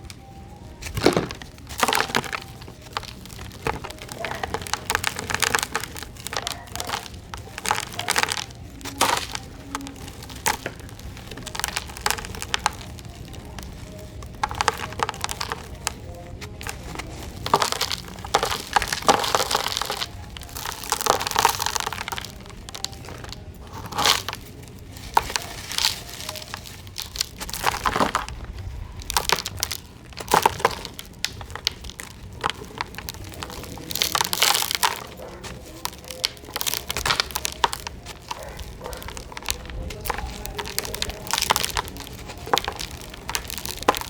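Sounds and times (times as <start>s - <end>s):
cement chunks crunching: 0.0s - 44.0s.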